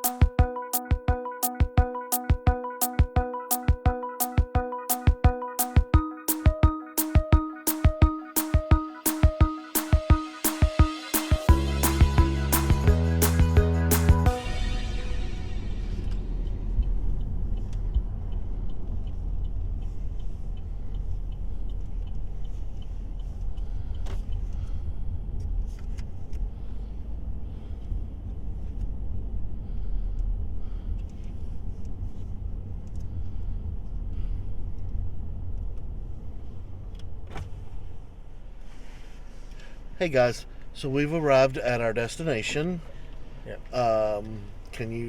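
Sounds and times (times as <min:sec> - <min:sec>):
car cabin road rumble: 0:15.8 - 0:38.5.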